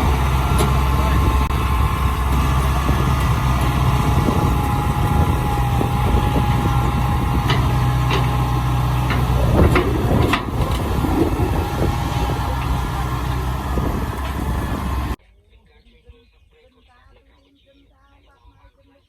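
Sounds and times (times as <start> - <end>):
harvester engine humming: 0.0 - 15.2.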